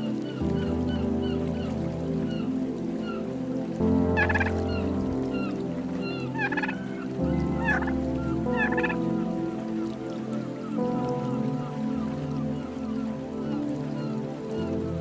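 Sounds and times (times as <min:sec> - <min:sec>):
turkey gobbling: 0:04.2 - 0:04.5, 0:06.4 - 0:06.8, 0:07.6 - 0:07.9, 0:08.6 - 0:09.0.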